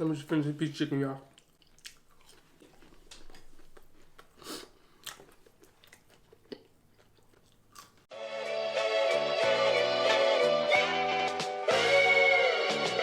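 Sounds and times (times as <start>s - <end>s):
chewing crispy food: 1.2s - 8.1s
music: 8.1s - 13.0s.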